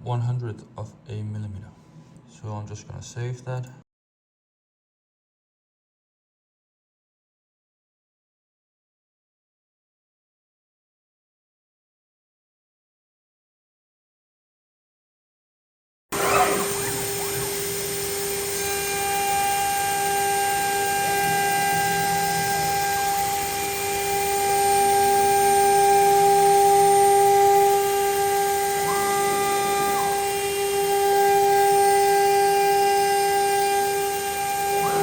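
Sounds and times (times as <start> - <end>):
router spindle whining: 16.2 - 35.0
stepper motors whining: 16.2 - 35.0.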